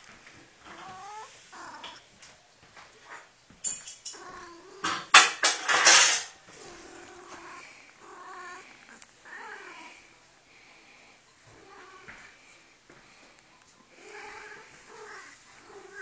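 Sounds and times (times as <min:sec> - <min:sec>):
loud clatter: 0:04.8 - 0:06.3.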